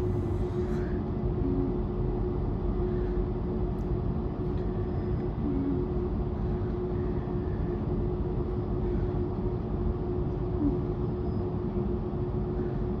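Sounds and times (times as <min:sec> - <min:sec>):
train rumbling: 0:00.0 - 0:02.8
constant hum: 0:00.0 - 0:13.0.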